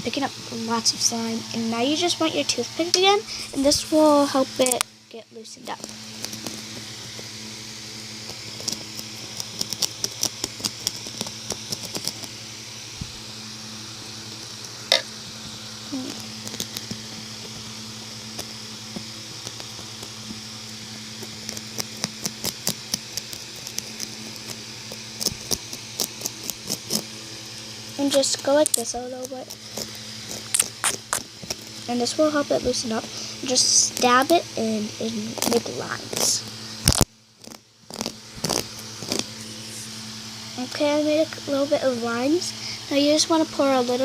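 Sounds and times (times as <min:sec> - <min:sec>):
steady low hum: 0:00.0 - 0:44.0
toothpick scratching carpet: 0:08.2 - 0:12.3, 0:21.2 - 0:27.1, 0:28.0 - 0:31.7, 0:35.3 - 0:40.0.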